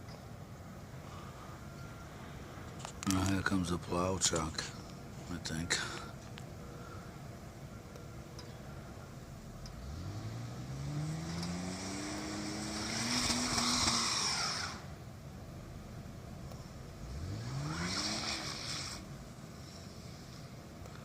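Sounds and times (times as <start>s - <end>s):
engine revving with rising whine: 9.3s - 20.6s.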